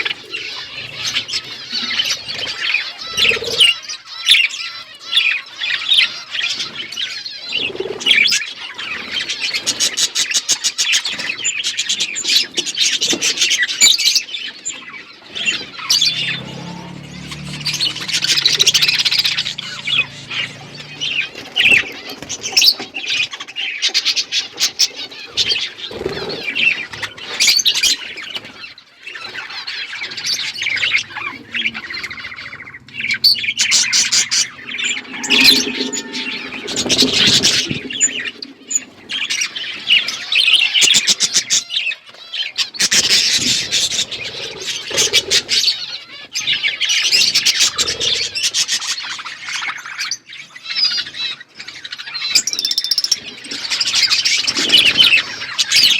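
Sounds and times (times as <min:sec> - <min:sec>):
budgerigars chirping: 0:15.4 - 0:22.8.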